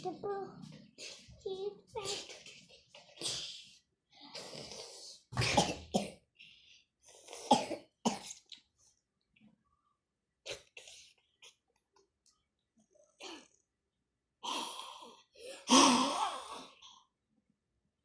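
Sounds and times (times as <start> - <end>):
person coughing: 5.4 - 6.2, 7.4 - 8.4.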